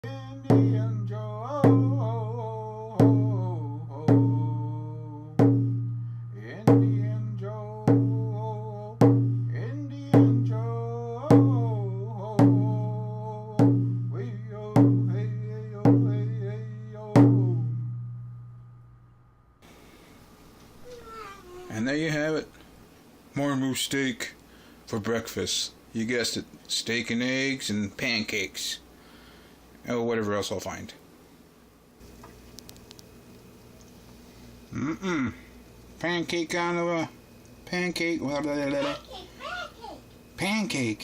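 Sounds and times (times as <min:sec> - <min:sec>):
deep drum beat: 0:00.0 - 0:18.8.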